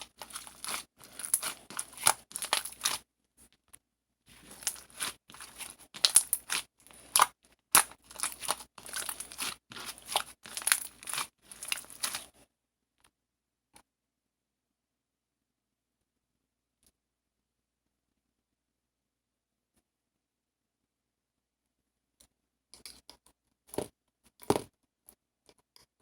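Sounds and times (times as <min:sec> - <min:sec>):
crinkling handling noise: 0:00.0 - 0:03.6, 0:04.3 - 0:12.4.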